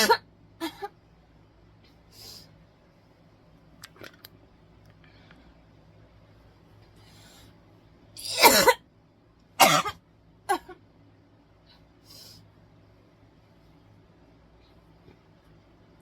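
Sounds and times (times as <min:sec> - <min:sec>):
person coughing: 0:00.0 - 0:00.9, 0:08.2 - 0:08.8, 0:09.6 - 0:10.8.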